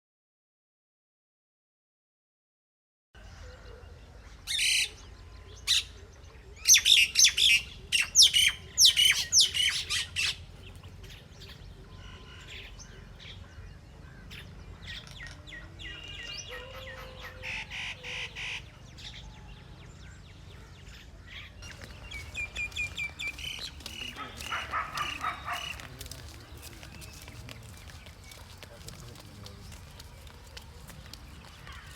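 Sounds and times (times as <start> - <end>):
birds chirping: 3.4 - 31.9
bird call notes: 21.6 - 28.5.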